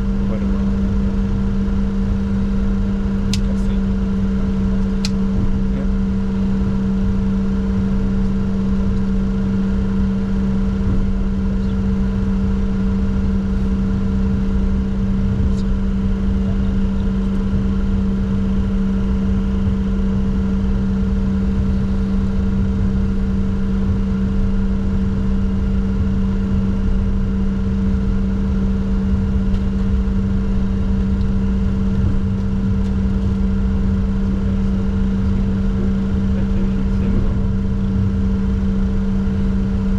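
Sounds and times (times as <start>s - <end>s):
jet cockpit hum: 0.0s - 39.9s
even rumble: 29.1s - 39.9s.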